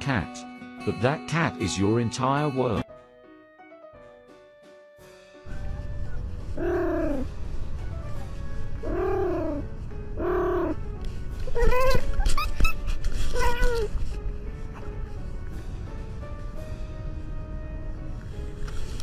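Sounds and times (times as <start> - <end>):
low rumble: 5.5 - 11.4
cat meowing: 6.6 - 7.3, 8.8 - 9.6, 10.2 - 10.8, 11.5 - 12.2.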